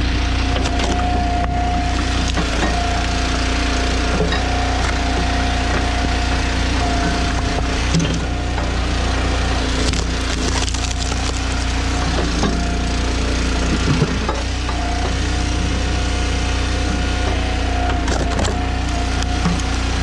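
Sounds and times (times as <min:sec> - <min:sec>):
log splitter engine running: 0:00.0 - 0:20.0
logs cracking as they split: 0:00.4 - 0:06.4, 0:07.3 - 0:12.5, 0:17.9 - 0:20.0.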